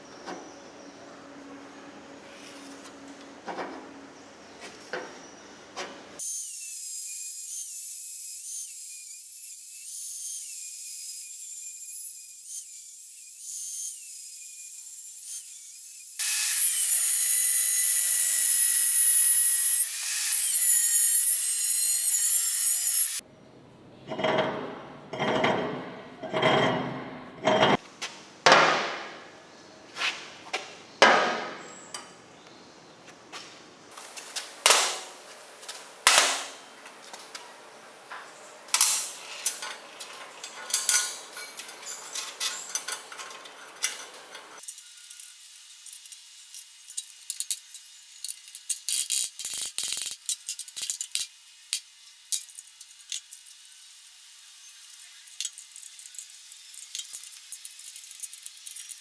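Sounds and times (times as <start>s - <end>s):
metal clanks: 24.1s - 27.8s, 34.4s - 44.6s.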